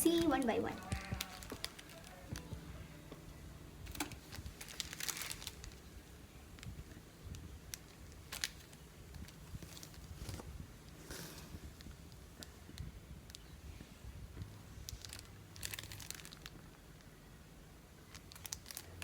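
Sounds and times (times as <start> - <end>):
packaging crinkling: 0.0 - 2.5, 3.9 - 10.5, 14.9 - 16.8, 18.1 - 19.0.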